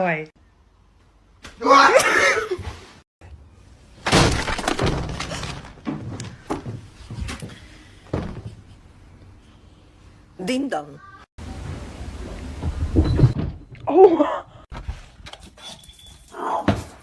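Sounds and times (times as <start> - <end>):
loud crash of objects breaking: 4.0 - 5.8.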